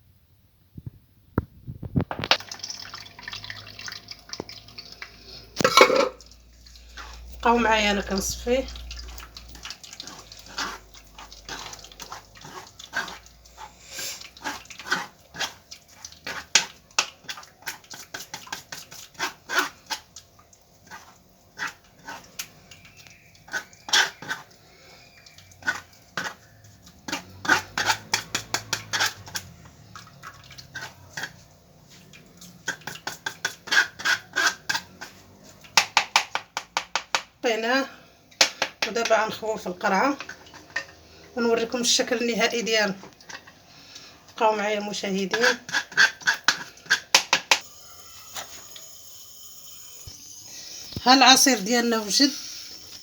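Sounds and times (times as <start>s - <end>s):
spoon scraping and tapping strainer: 5.6s - 6.2s.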